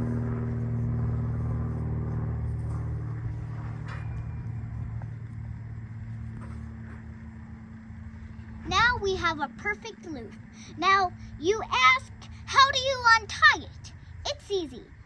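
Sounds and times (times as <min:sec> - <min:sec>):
engine rumble with hum: 0:00.0 - 0:15.0.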